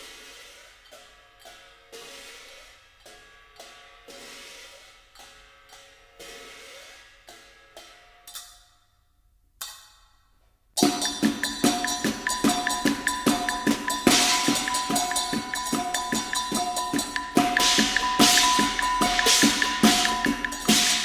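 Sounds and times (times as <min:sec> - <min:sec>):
cymbal and hi-hat strikes: 0:10.8 - 0:21.0.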